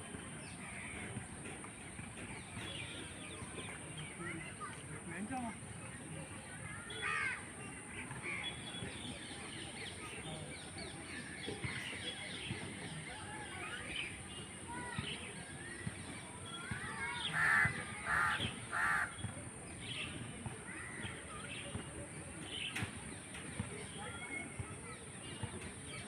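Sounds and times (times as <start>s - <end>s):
birds chirping: 0.4s - 21.8s
crow cawing: 17.3s - 19.2s.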